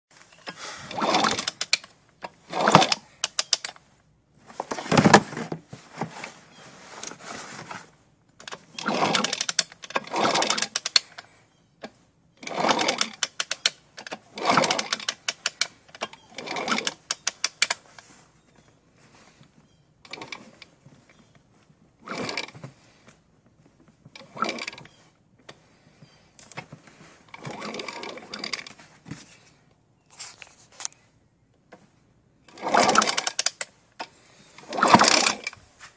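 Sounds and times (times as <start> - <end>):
engine turning over clicking: 0.3 - 3.8, 8.3 - 18.1, 20.0 - 23.2, 24.1 - 28.8, 32.5 - 35.6.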